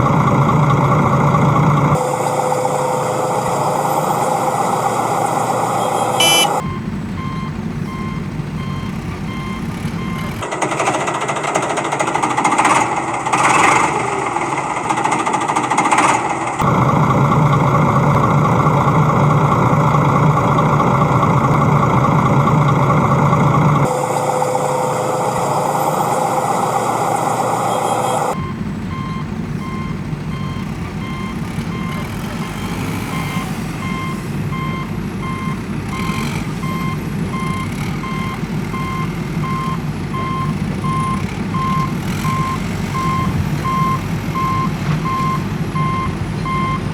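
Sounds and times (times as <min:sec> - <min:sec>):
loud engine running: 0:00.0 - 0:46.9
reversing alarm beeping: 0:01.9 - 0:10.5, 0:23.8 - 0:46.9.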